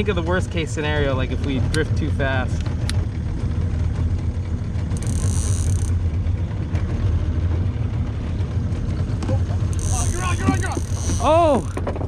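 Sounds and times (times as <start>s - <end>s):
outboard motor idling: 0.0s - 12.0s.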